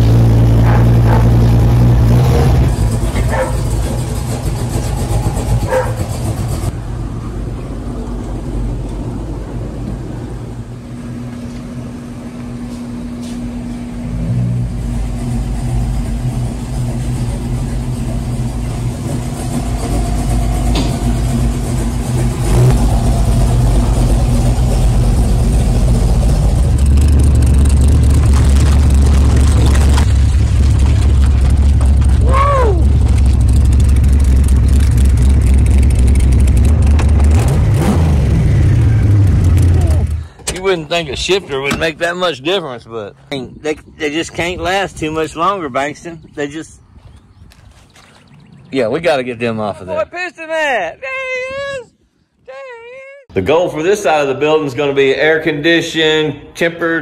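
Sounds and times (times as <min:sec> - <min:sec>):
car engine running: 0:00.0 - 0:07.0, 0:10.6 - 0:42.3.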